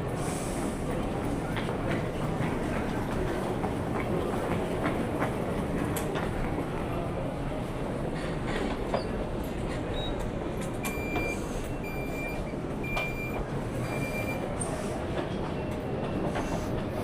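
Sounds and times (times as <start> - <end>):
train carriage rumble: 0.0 - 17.0
door warning beeps: 10.8 - 14.5.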